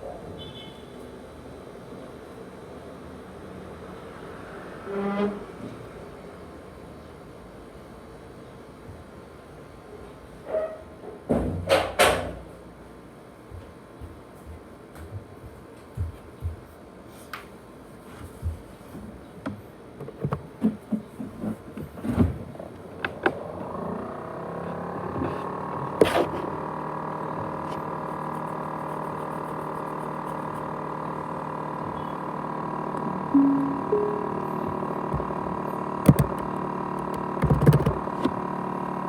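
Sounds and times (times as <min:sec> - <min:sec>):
hard drive motor whine and hum: 0:22.9 - 0:39.0
sharp click: 0:36.1 - 0:38.0
clicks and knocks: 0:36.1 - 0:38.3.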